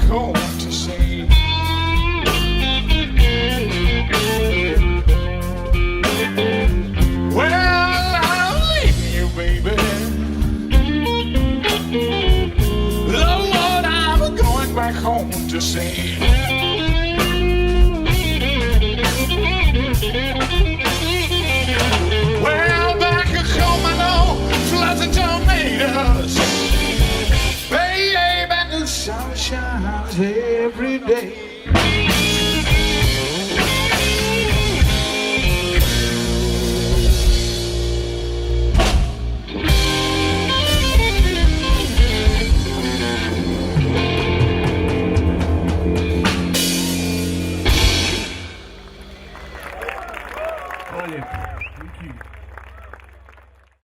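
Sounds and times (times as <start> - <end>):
electric guitar bent notes: 0.0 - 29.2, 31.6 - 49.6
drum kit: 0.0 - 30.3, 31.2 - 51.6
bass guitar: 0.0 - 53.8
person singing: 7.3 - 10.4, 12.3 - 16.8, 21.6 - 34.6.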